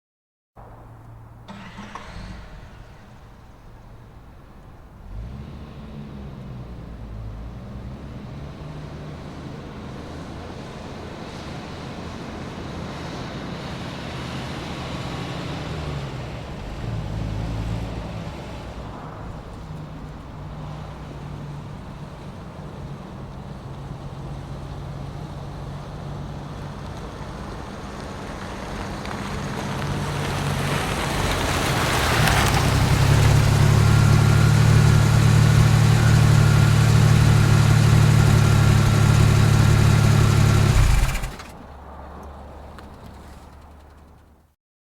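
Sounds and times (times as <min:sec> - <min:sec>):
car engine approaching and idling: 0:00.6 - 0:44.5.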